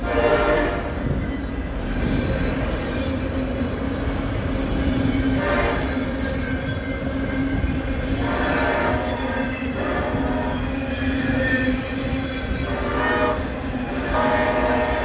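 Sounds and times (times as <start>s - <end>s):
train horn blasts: 0.0s - 1.4s, 5.1s - 15.0s
train rumbling past: 0.0s - 15.0s.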